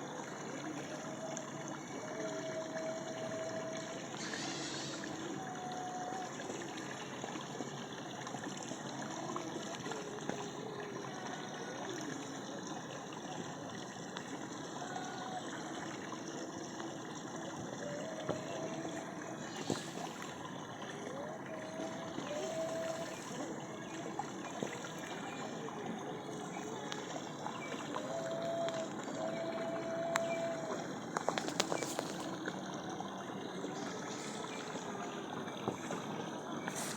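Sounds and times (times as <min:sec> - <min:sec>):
faint short pitched calls: 0:04.2 - 0:05.2.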